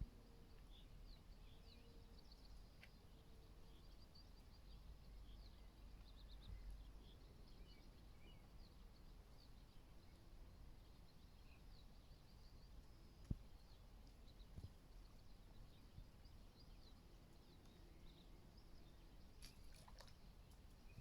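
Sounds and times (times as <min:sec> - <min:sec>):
distant birdsong chirps and trills: 0:00.0 - 0:21.0.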